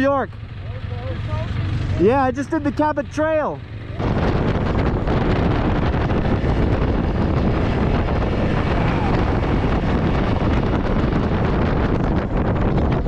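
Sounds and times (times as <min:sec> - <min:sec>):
motorcycle engine running: 0:00.0 - 0:13.0
wind noise on microphone: 0:04.0 - 0:13.0.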